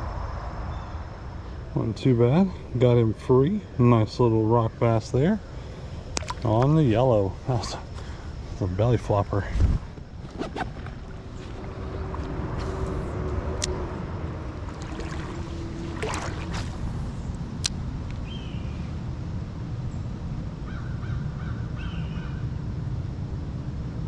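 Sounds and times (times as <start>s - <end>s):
wind: 0.0s - 24.0s
creek water: 1.4s - 18.3s.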